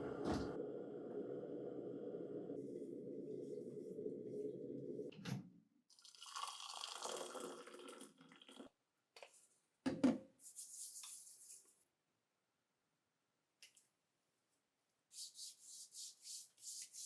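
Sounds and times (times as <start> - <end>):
low steady hum: 0.0 - 5.1.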